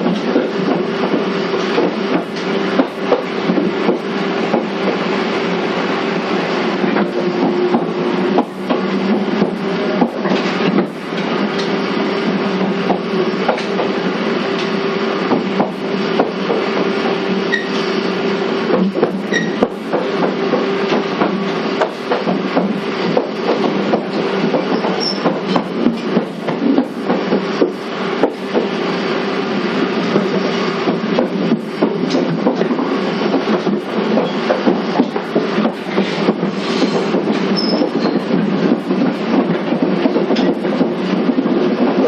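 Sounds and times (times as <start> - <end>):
track clicks: 0.0 - 42.0
train motor hum: 0.0 - 42.0
train rumble: 0.0 - 42.0.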